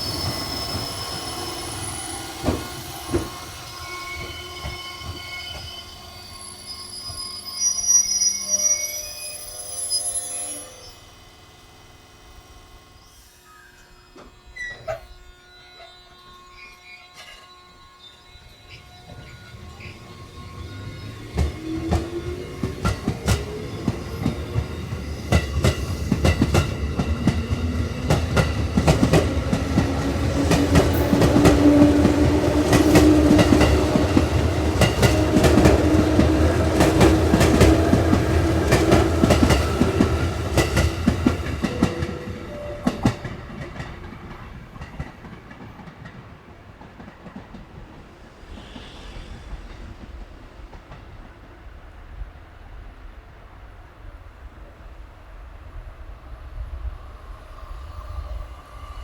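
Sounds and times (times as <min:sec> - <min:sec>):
train motor hum: 0:19.2 - 0:44.8
train wheels clacking over rail joints: 0:21.4 - 0:42.2.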